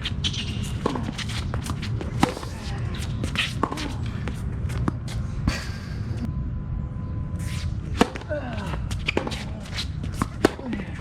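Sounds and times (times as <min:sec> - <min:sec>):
steady low rumble: 0:00.0 - 0:11.0
tennis ball impacts: 0:00.3 - 0:05.1, 0:08.0 - 0:08.3, 0:08.9 - 0:11.0.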